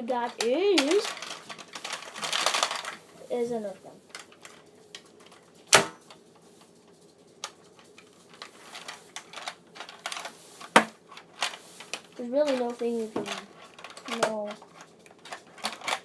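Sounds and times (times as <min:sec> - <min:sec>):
toy gun plastic clicks and rattles: 0:00.2 - 0:03.0, 0:07.4 - 0:16.0.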